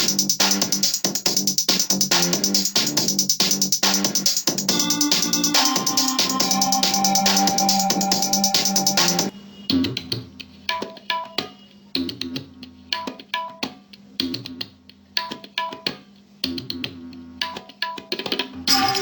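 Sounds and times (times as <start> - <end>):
sparse percussive music track: 0.0 - 9.3, 18.6 - 19.0.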